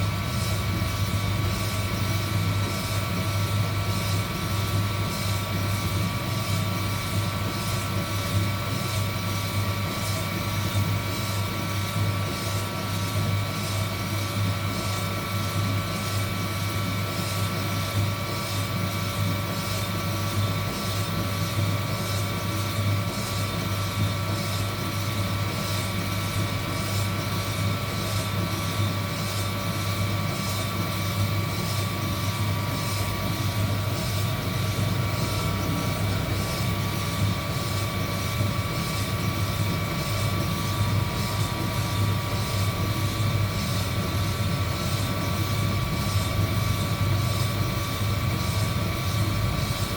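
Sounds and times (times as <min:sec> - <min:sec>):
heat gun blower fan droning: 0:00.0 - 0:49.9.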